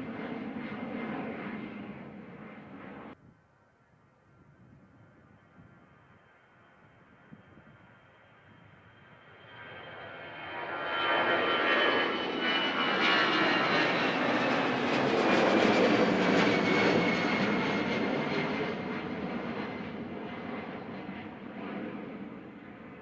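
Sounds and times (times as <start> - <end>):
jet engines whining on takeoff: 0.0 - 3.2, 8.4 - 23.0.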